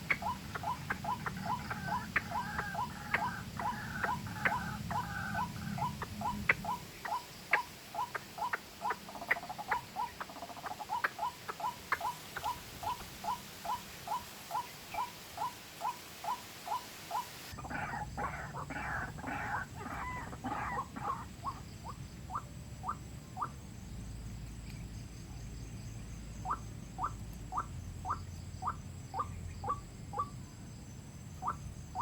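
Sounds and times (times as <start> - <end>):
waterhen calling: 0.0 - 23.6.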